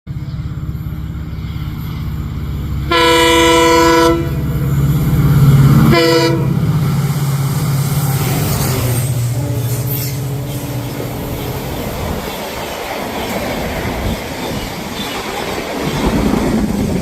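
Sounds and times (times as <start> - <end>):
diesel locomotive engine throbbing: 0.1 - 17.0
train air horn blasts: 2.9 - 4.6, 5.8 - 6.7, 8.4 - 11.4.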